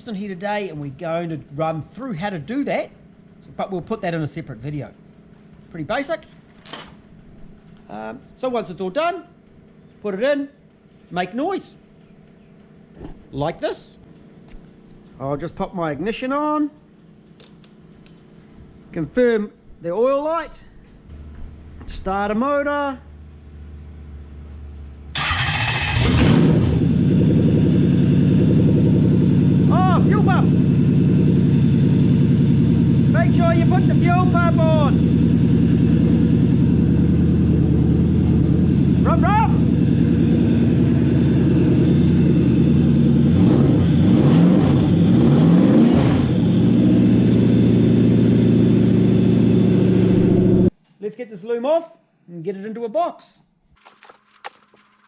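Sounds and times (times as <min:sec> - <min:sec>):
starter motor cranking: 0:25.1 - 0:27.0, 0:53.8 - 0:55.0
engine idling loudly: 0:25.2 - 0:44.3.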